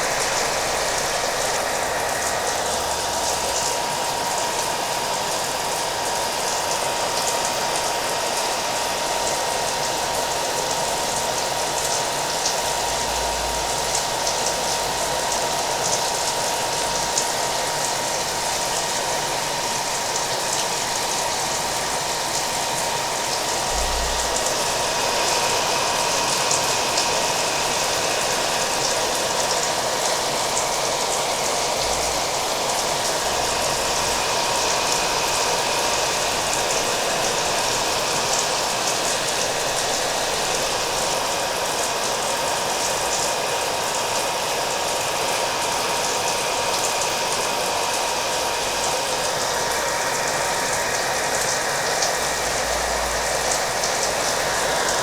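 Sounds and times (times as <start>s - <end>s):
rain hissing: 0.0s - 5.3s, 23.2s - 27.4s
hair dryer whine: 0.0s - 55.0s.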